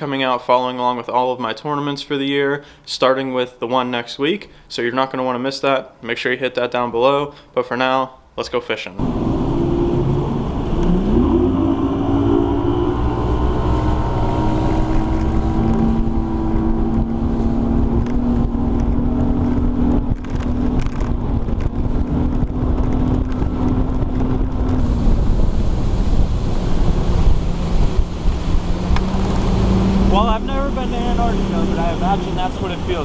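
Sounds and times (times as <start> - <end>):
outboard motor running: 9.0 - 33.0
wind buffeting microphone: 9.0 - 33.0.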